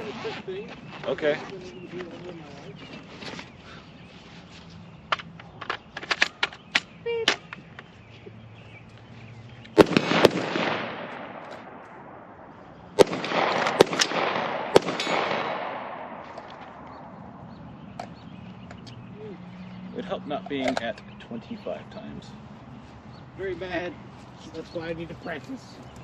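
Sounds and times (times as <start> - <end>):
rifle shots with rolling echo: 9.8 - 17.4.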